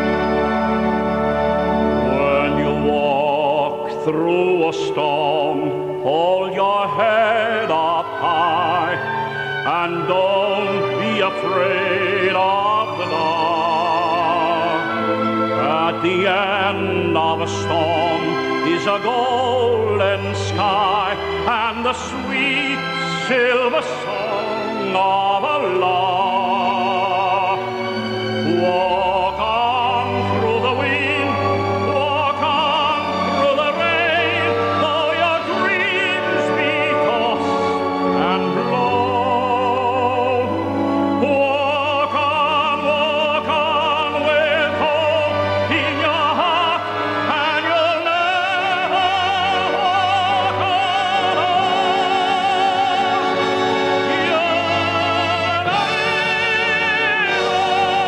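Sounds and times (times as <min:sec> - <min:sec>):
orchestral accompaniment: 0:00.0 - 0:58.0
tenor singing opera: 0:00.0 - 0:58.0.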